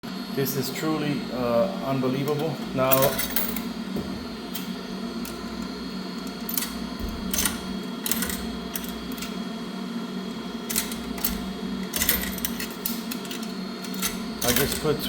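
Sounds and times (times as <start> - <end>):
steady machine hum: 0.0 - 15.0
coin mechanism metallic clicks: 2.3 - 3.7, 4.6 - 9.4, 10.6 - 15.0.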